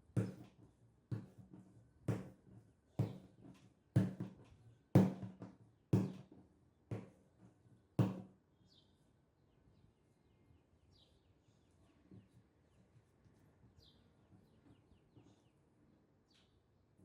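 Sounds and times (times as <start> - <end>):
dull thuds on a work surface: 0.1 - 0.5, 1.1 - 2.4, 3.0 - 6.3, 8.0 - 8.3.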